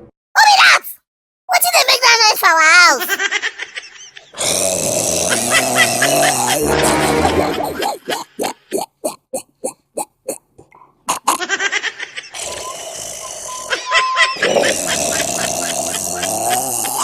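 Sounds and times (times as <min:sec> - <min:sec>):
man snoring comically: 0:04.4 - 0:08.9, 0:12.3 - 0:17.0.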